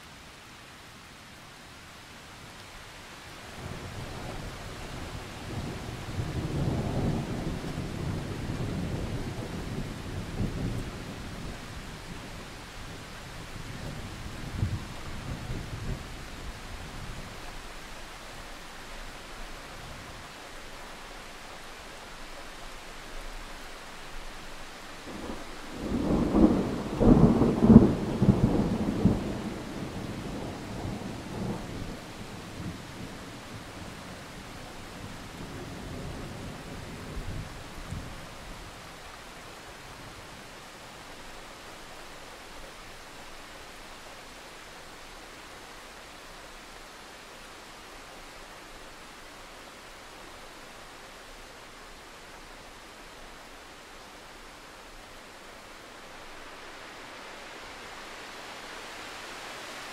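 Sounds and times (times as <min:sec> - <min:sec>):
rain-like hiss: 0:00.0 - 0:59.9
rolling thunder rumble: 0:25.1 - 0:38.3.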